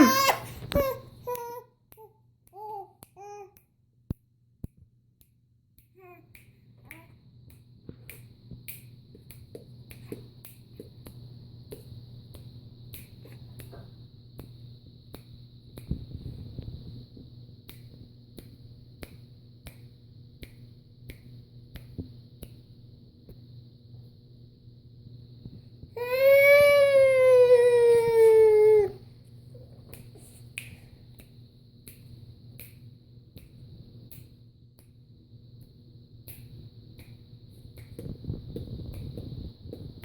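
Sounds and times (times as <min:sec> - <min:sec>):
baby babbling: 0:00.0 - 0:01.6
steady low hum: 0:00.0 - 0:40.0.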